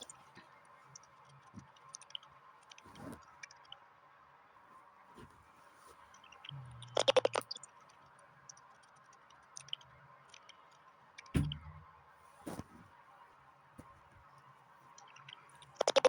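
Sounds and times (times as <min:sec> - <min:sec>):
heavy knock with low tone: 0:11.4 - 0:11.8.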